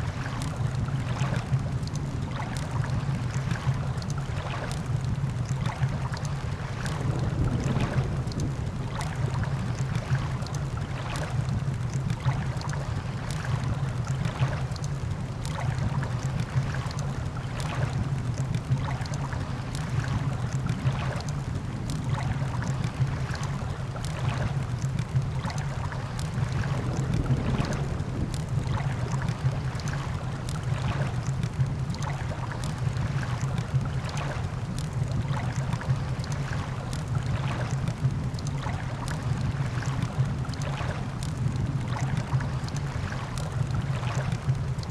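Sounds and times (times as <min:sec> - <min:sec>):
ocean surf rumble: 0:00.0 - 0:44.9.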